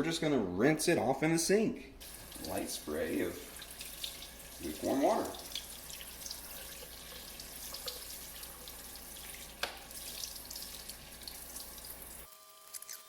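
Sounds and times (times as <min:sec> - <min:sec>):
tap water splashing: 0:02.0 - 0:12.2
water drips and ticks: 0:02.0 - 0:12.3.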